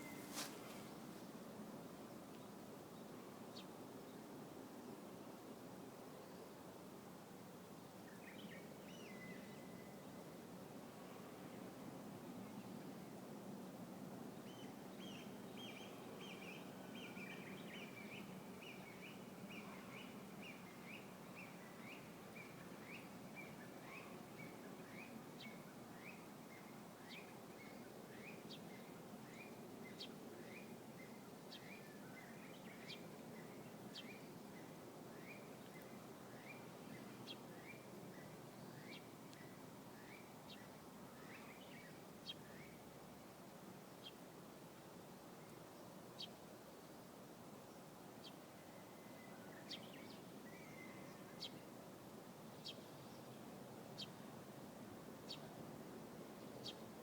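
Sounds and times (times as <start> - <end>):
songbird chirping: 0.0 - 1.0
faint background noise: 0.0 - 57.0.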